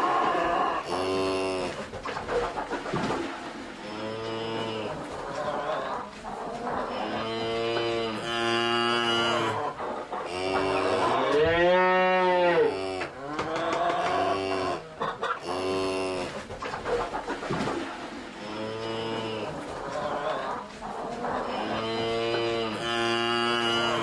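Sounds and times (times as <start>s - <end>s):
cattle mooing: 0.0s - 1.8s, 3.8s - 5.0s, 6.9s - 9.6s, 10.2s - 14.8s, 15.4s - 16.4s, 18.4s - 19.6s, 21.4s - 24.0s.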